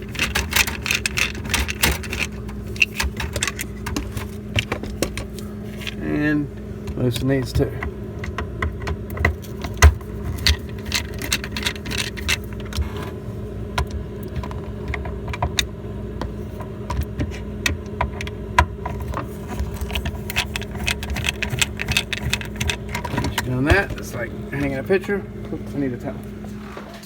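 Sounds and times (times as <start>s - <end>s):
socket tool clicks and metal rattles: 0.0s - 6.0s
steady low hum: 0.0s - 27.0s.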